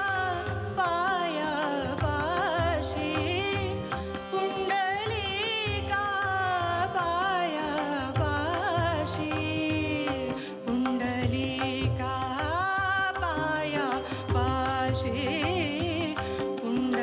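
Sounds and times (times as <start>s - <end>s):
person singing devotional song: 0.0s - 17.0s.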